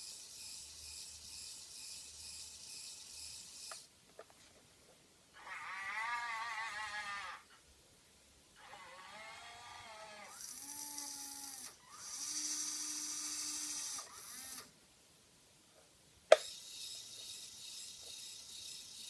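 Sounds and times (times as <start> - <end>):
faint steady hiss: 0.0 - 19.0
electric gear motors whining: 8.6 - 14.7, 16.4 - 19.0.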